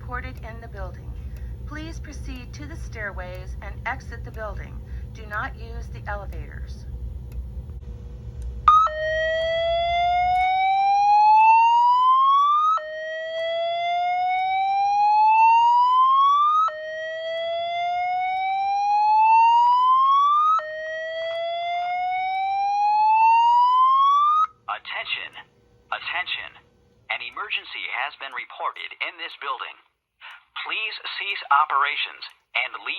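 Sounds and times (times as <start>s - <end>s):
fire alarm whoop tone: 8.7s - 24.6s.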